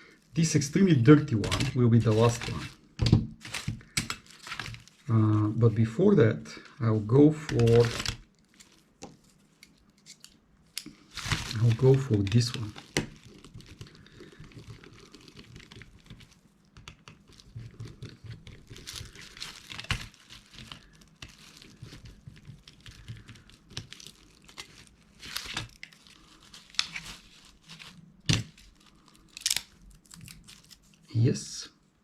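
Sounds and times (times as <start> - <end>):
plastic scraping and creaking: 1.1 - 5.6, 7.3 - 9.2, 11.1 - 16.4, 17.0 - 30.8.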